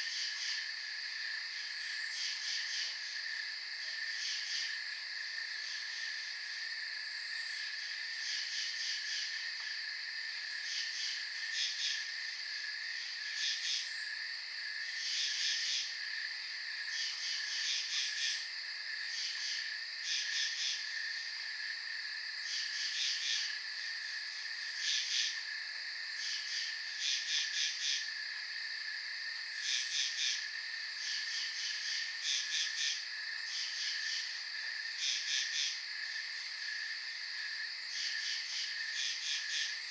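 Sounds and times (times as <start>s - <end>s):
cricket trill: 22.4s - 39.9s
rapid pulsing insect chirps: 26.2s - 39.9s.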